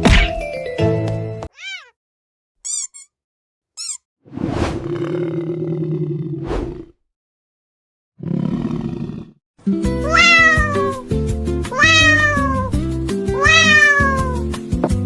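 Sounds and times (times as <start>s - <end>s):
cat meowing: 1.5s - 2.0s, 10.0s - 11.1s, 11.7s - 14.5s.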